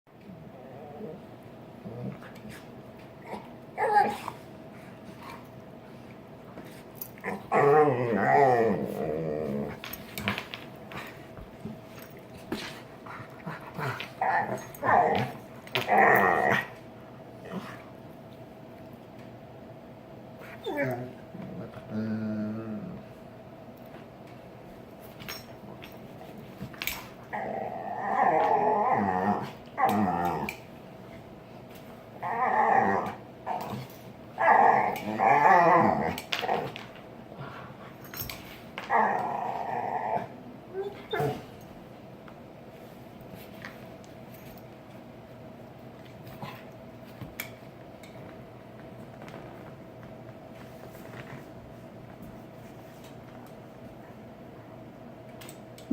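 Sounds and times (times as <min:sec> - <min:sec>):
dog growling: 0:07.2 - 0:09.9, 0:13.1 - 0:16.8, 0:20.6 - 0:23.1, 0:27.3 - 0:30.6, 0:32.2 - 0:36.8, 0:38.9 - 0:41.5.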